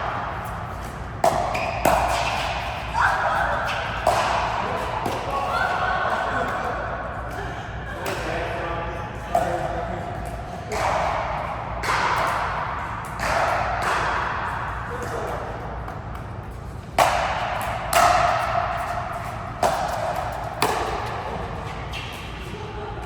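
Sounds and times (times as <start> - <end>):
ball striking racket and wall: 0.0 - 5.4, 17.0 - 22.3.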